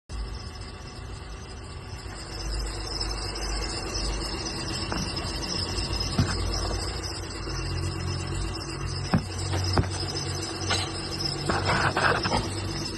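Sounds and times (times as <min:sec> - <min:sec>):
car engine running: 0:03.6 - 0:12.9
sharp engine knocks: 0:09.1 - 0:10.0.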